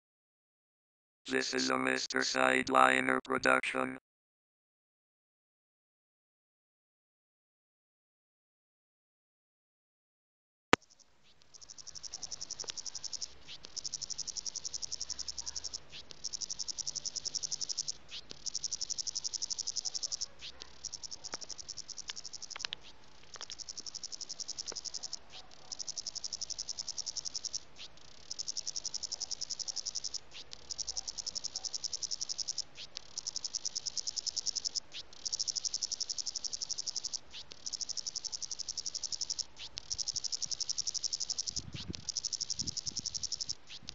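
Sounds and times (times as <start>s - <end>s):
cicada buzzing: 10.8s - 43.9s.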